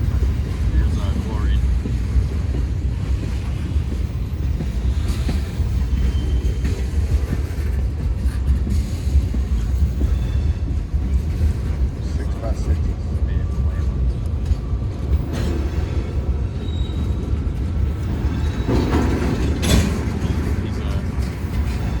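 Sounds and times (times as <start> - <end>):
freight train wheels rumbling: 0.0 - 22.0.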